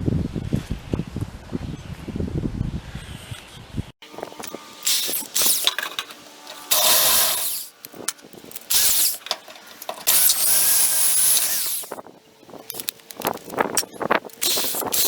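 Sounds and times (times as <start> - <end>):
electric drill whining: 4.0 - 12.0, 14.3 - 15.0.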